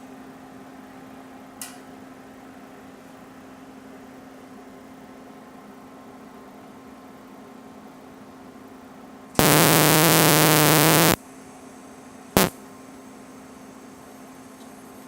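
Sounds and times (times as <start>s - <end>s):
welder humming: 9.4s - 11.2s
welding arc buzzing: 9.4s - 11.2s.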